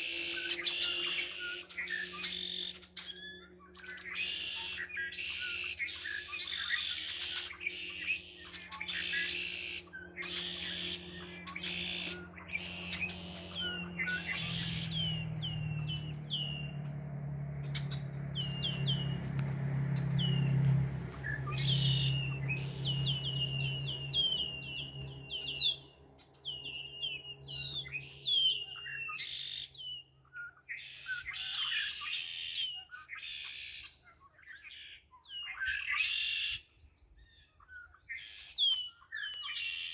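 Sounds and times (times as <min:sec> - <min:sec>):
low steady hum: 0:00.0 - 0:29.7
songbirds chirping and singing: 0:00.0 - 0:39.9.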